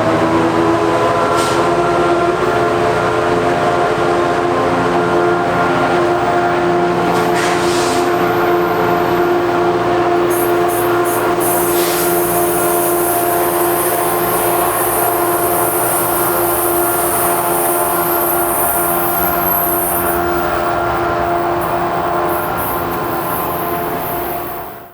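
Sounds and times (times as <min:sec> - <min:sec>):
locomotive engine whine: 0:00.0 - 0:24.9
brief hisses: 0:07.2 - 0:08.2, 0:10.3 - 0:12.6.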